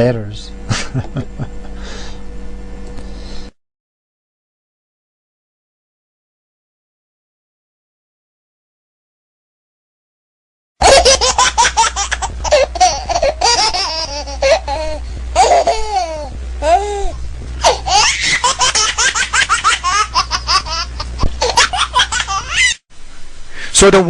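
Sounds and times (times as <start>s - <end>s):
low hum: 0.0s - 3.5s, 10.8s - 23.7s
high-pitched laughter: 10.8s - 17.0s, 17.6s - 22.8s.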